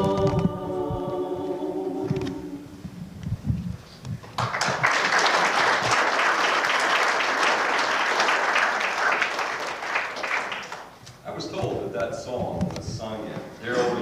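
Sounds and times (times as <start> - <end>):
crowd applauding: 4.4 - 11.0.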